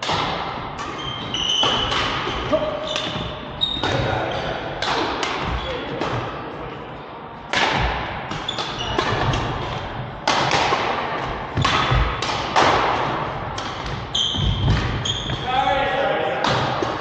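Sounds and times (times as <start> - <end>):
racket striking shuttlecock: 0.0 - 6.2, 7.5 - 15.4
court shoes squeaking: 0.0 - 6.3, 8.3 - 15.6.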